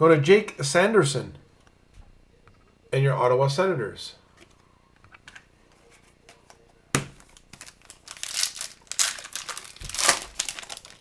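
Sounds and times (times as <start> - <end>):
wrapper tearing and crinkling: 7.2 - 11.0.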